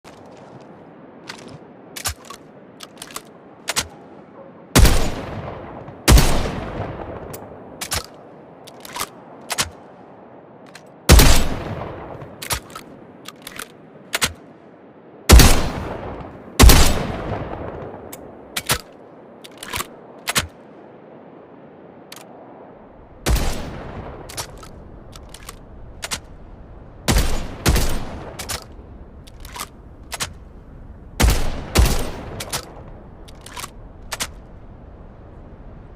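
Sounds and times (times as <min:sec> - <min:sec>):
metallic clicks of gun action: 0:01.2 - 0:04.0, 0:07.3 - 0:09.8, 0:12.4 - 0:14.4, 0:18.6 - 0:20.6, 0:24.3 - 0:26.3, 0:27.8 - 0:30.5, 0:31.9 - 0:34.5
shotgun shots: 0:04.8 - 0:07.0, 0:11.1 - 0:12.7, 0:15.3 - 0:17.6.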